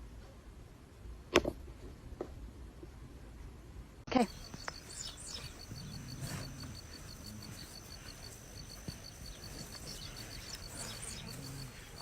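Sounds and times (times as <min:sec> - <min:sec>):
faint high whine: 0:04.1 - 0:12.0
insects chirping: 0:04.1 - 0:12.0
high bird chirps: 0:04.2 - 0:12.0.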